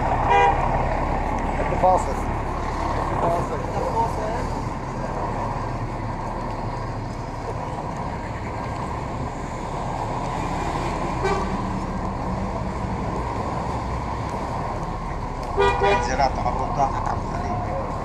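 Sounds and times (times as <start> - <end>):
street traffic: 0.0 - 18.0
short horn: 11.2 - 11.6.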